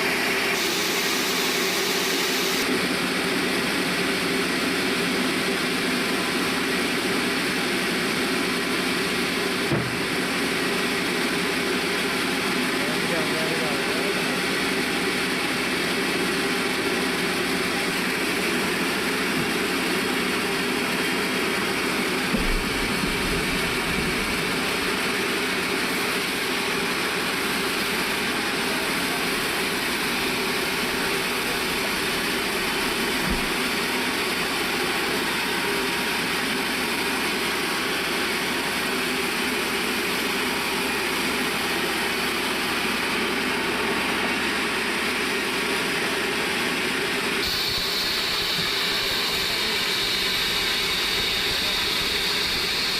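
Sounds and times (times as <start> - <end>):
band saw running: 0.0 - 52.9
low thump: 9.7 - 10.0, 22.3 - 23.5
short knock: 9.7 - 10.0.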